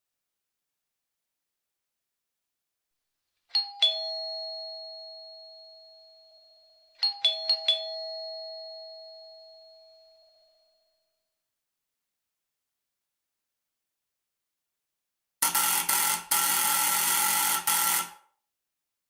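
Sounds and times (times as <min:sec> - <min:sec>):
two-tone doorbell chime: 0:03.5 - 0:11.2, 0:15.4 - 0:18.1.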